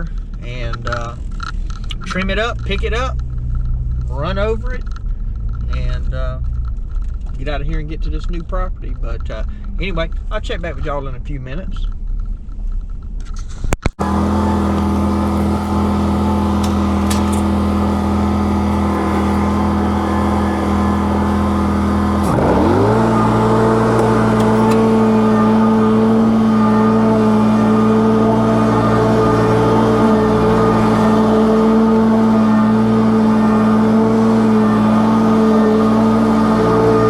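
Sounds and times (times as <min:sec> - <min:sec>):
lawn mower engine running: 0:14.0 - 0:37.0.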